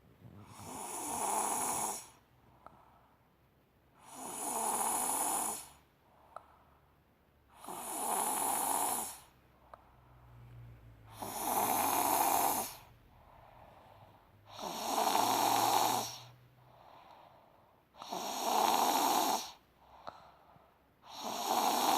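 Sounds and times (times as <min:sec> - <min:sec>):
person snoring: 0:00.4 - 0:02.2, 0:04.0 - 0:05.8, 0:07.5 - 0:09.3, 0:11.1 - 0:16.4, 0:18.0 - 0:20.3, 0:21.0 - 0:21.9.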